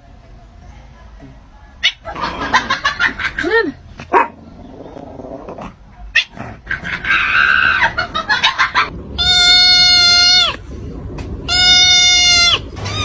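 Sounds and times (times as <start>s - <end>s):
cat meowing and yowling: 11.5s - 13.0s.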